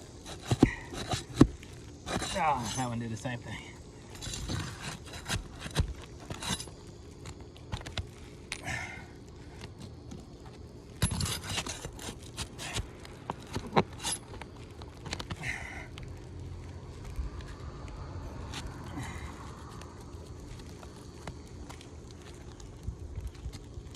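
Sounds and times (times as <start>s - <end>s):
scraper scraping shingles: 0.0s - 8.0s, 11.0s - 14.6s.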